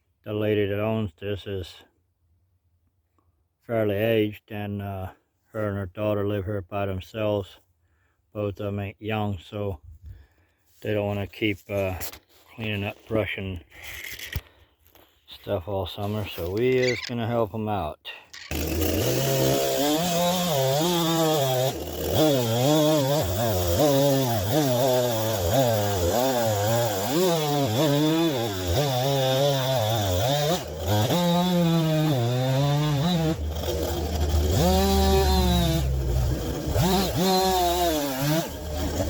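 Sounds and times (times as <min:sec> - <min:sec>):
chainsaw revving: 0:18.3 - 0:39.0.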